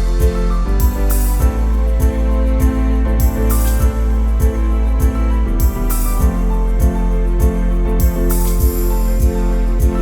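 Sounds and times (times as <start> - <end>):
low thumping beat: 9.2 - 10.0.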